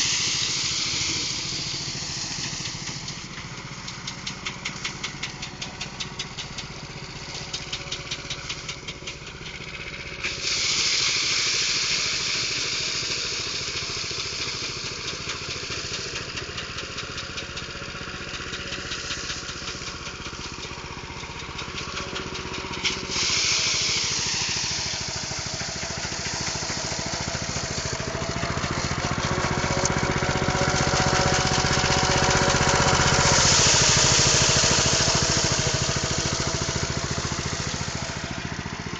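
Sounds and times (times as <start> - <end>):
loud rushing hiss of threshing: 0.0 - 3.4, 10.2 - 16.2, 18.3 - 38.9
rice thresher engine running: 0.0 - 38.9.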